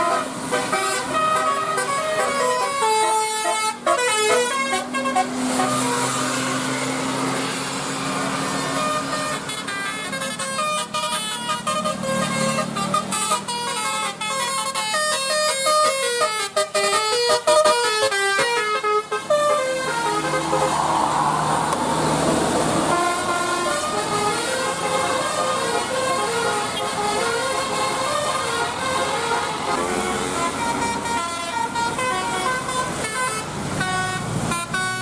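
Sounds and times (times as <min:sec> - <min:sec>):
bus musical air horn tune: 0:00.0 - 0:35.0
rushing noise: 0:19.6 - 0:24.3.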